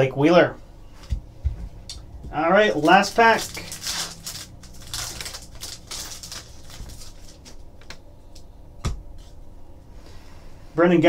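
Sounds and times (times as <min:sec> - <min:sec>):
wrapper crinkling: 0:02.6 - 0:08.0
cards rustling: 0:02.7 - 0:08.5.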